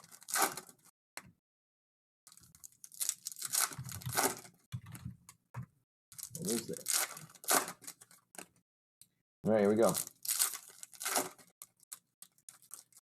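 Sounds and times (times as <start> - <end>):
card packaging tearing and crinkling: 0.0 - 0.8, 2.3 - 4.6, 6.2 - 8.2, 9.7 - 13.0
packaging rustle: 6.2 - 8.2, 9.8 - 13.0.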